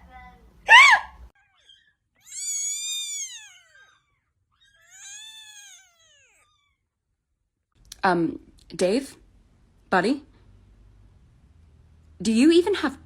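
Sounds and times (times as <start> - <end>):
cat meowing: 1.4 - 6.8.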